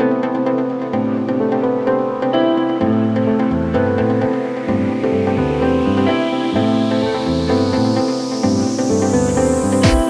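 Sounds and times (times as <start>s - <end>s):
synth chords: 0.0s - 10.0s
rising noise sweep: 4.0s - 10.0s.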